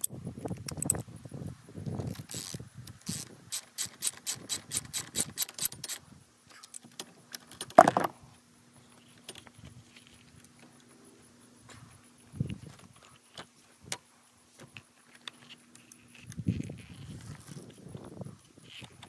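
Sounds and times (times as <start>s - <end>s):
socket ratchet clicking: 0.0s - 1.0s, 2.1s - 6.0s.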